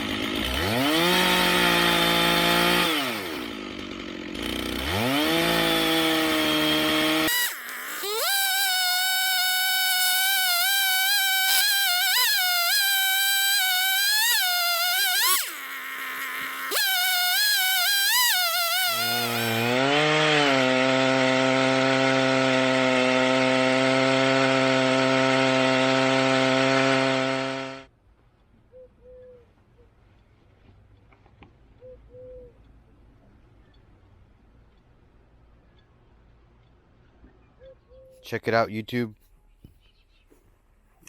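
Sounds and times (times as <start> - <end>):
chainsaw cutting log: 0.0 - 27.9.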